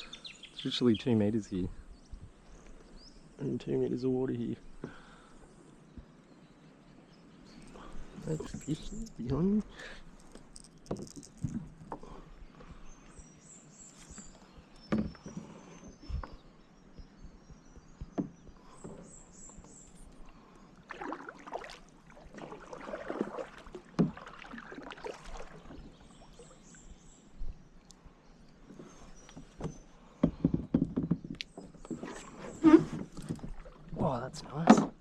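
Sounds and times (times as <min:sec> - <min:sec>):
small birds chirping: 0:00.0 - 0:35.0
paddle splashing in water: 0:18.0 - 0:26.9, 0:31.4 - 0:35.0
knocks on kayak hull: 0:23.4 - 0:24.4.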